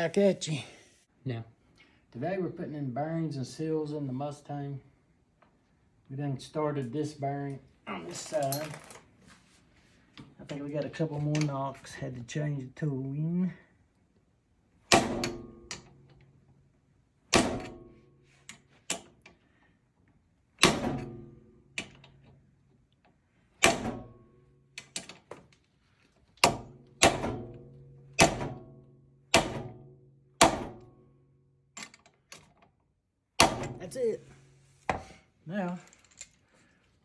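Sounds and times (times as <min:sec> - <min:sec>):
hammer striking metal: 0:26.4 - 0:27.6, 0:28.2 - 0:28.7, 0:29.3 - 0:29.8, 0:30.4 - 0:30.9, 0:33.4 - 0:33.8.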